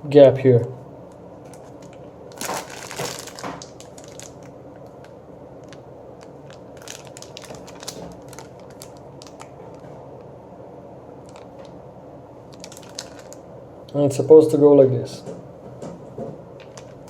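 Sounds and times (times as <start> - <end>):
packaging crinkling and rustling: 1.4 - 10.1, 11.2 - 11.8, 12.5 - 13.4, 16.6 - 17.0.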